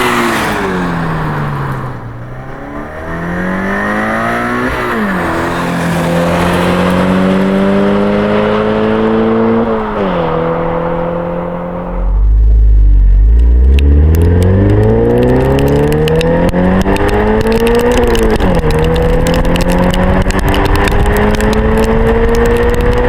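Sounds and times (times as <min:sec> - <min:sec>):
car engine accelerating: 0:00.0 - 0:23.0.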